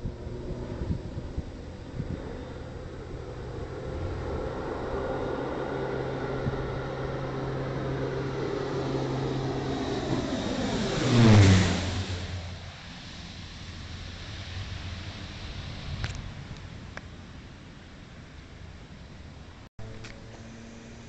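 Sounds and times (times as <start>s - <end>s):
propeller plane passing overhead: 0.0s - 21.0s.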